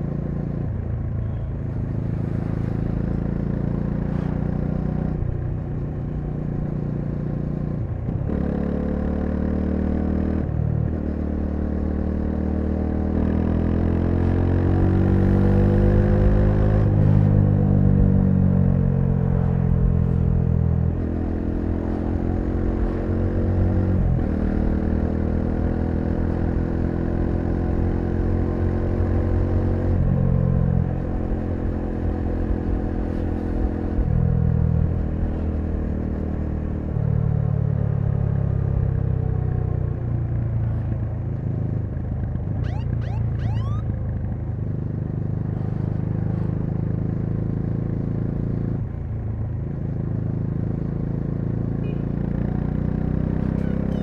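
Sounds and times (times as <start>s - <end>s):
motorcycle engine revving: 42.5s - 44.1s, 51.5s - 54.0s.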